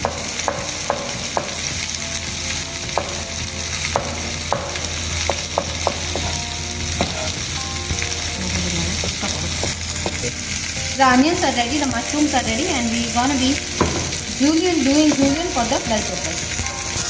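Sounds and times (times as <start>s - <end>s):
chicken sizzling in oiled pan: 0.0s - 17.0s
knife taps on cutting board: 13.8s - 14.2s.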